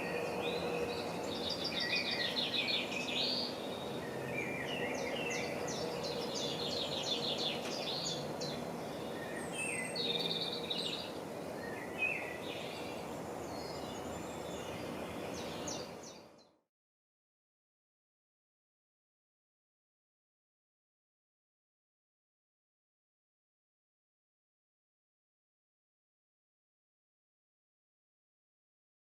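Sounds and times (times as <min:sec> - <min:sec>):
outdoor background hiss: 0:00.0 - 0:16.6
small birds chirping and trilling: 0:00.0 - 0:16.6.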